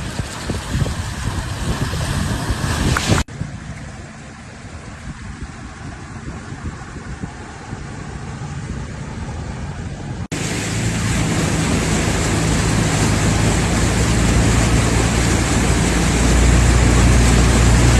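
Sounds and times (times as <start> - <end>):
heavy rain: 0.0 - 6.7, 7.6 - 17.9
flood water rushing: 0.0 - 17.9
low vehicle engine hum: 0.0 - 17.9.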